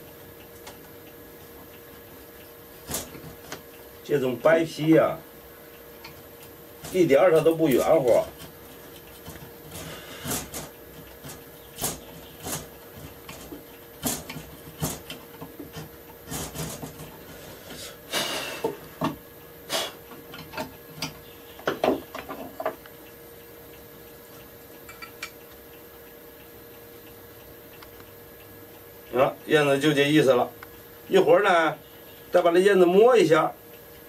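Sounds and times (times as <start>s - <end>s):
scraping strokes on wood: 7.8s - 18.8s
knocks and taps on wood: 20.4s - 22.8s.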